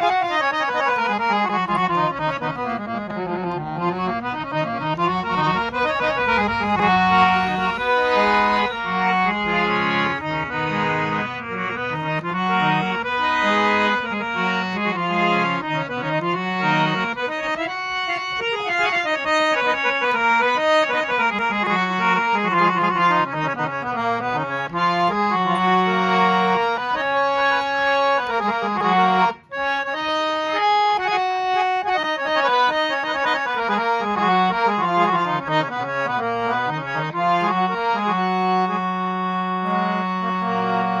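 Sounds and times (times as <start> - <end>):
harmonium melody: 0.0 - 41.0
low drone note: 4.0 - 10.8.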